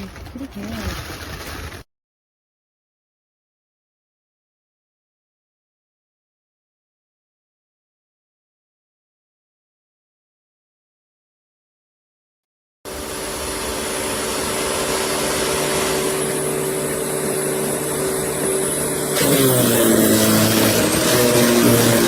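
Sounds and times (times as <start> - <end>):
electric wood chipper running: 12.9 - 22.0.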